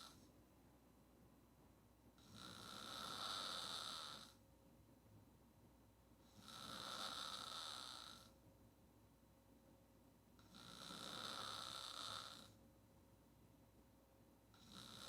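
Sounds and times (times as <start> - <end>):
woman snoring: 0.0 - 0.2, 2.2 - 4.4, 6.2 - 8.3, 10.4 - 12.6, 14.6 - 15.0.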